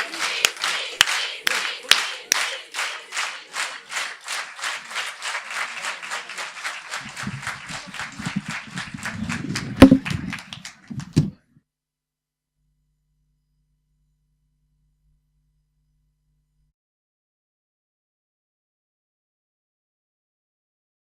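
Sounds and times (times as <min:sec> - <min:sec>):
audience clapping in rhythm: 0:00.0 - 0:11.4
loud thumps: 0:08.1 - 0:11.4.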